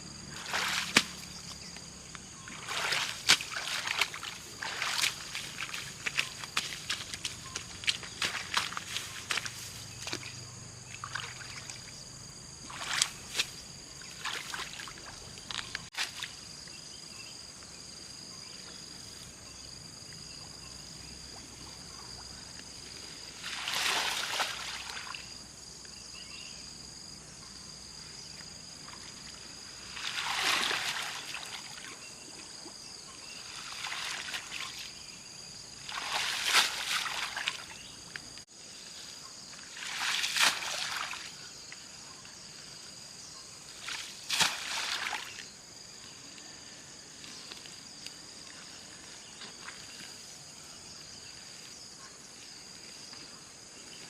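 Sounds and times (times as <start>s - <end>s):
outdoor background: 0.0s - 54.0s
water splashing and sloshing: 0.3s - 12.0s, 12.6s - 16.5s, 21.2s - 25.4s, 28.3s - 42.7s, 43.6s - 46.4s.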